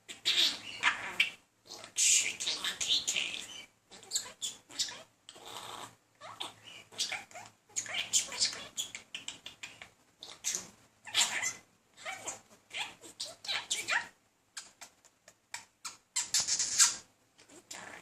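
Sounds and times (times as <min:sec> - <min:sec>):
budgerigar chattering and warbling: 0:00.1 - 0:14.8.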